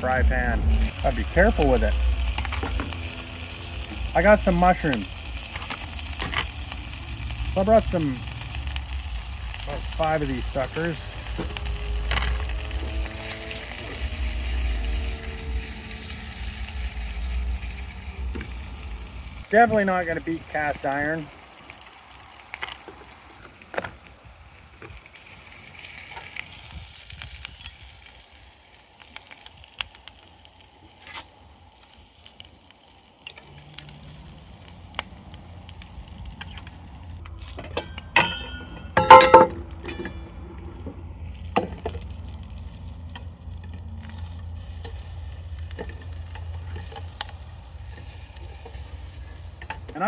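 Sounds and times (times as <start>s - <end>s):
low steady hum: 0.0s - 19.6s, 37.1s - 49.8s
mushrooms frying in a pan: 0.0s - 50.0s
metallic clank ringing: 37.7s - 40.4s.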